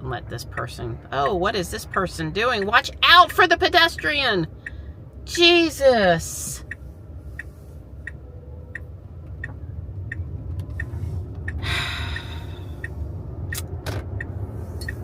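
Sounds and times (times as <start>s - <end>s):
cabin road noise rumble: 0.0s - 15.0s
turn signal ticking: 0.0s - 15.0s
sharp clicks: 8.1s - 15.0s
breathy exhale: 11.6s - 12.9s.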